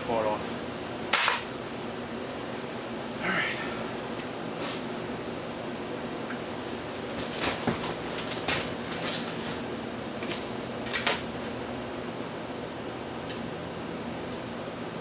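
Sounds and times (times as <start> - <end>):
plastic fan parts clicking and clattering: 6.6 - 11.6.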